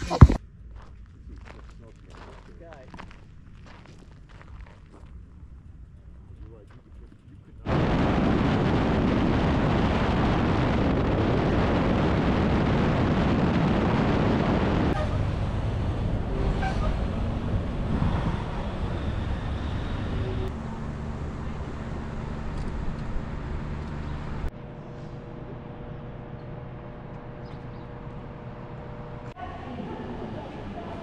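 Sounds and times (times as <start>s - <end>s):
road noise: 0.0s - 31.0s
wind rushing over microphone: 7.6s - 20.6s.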